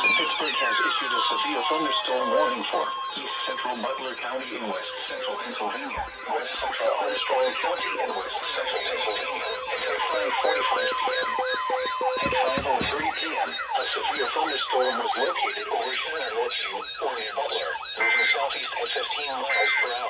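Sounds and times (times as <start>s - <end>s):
electronic siren warning tones: 0.0s - 20.0s
steady electronic tone: 1.0s - 14.2s.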